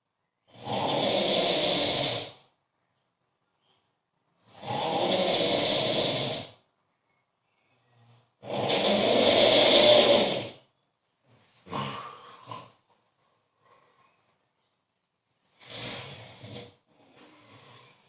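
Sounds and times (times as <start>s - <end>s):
man snoring loudly: 0.5s - 2.4s, 4.5s - 6.6s, 8.4s - 10.6s, 15.6s - 16.8s.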